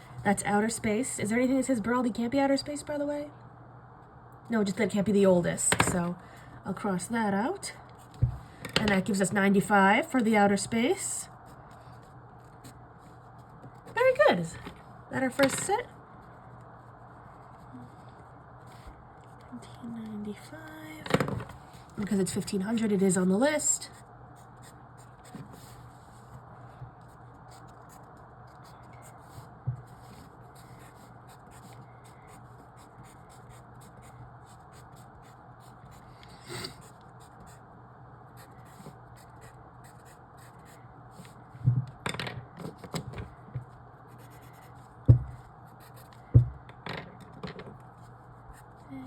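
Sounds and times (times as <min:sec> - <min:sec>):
steady low hum: 0:00.0 - 0:49.0
pen scratching and tapping paper: 0:42.6 - 0:46.5.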